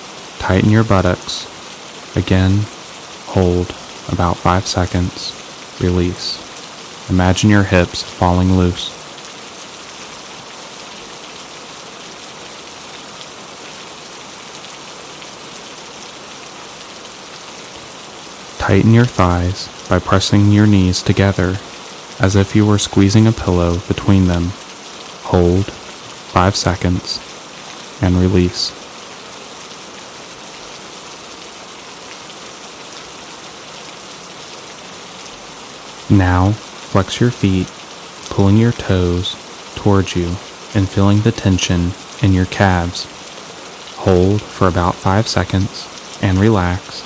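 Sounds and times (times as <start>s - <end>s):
gentle rain hiss: 0.0s - 47.0s
rain drop ticks: 18.5s - 29.2s, 35.2s - 47.0s.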